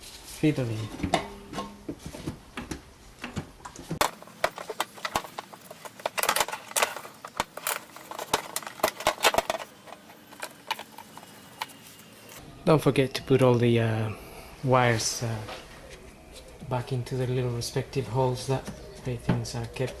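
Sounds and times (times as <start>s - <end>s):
plastic clicks and knocks: 4.0s - 12.4s.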